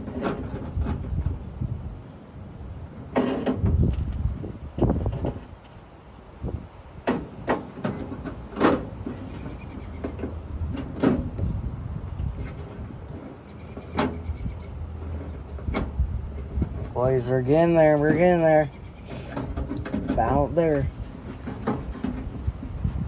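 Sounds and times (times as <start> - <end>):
metal knocks and clanks: 19.3 - 23.0.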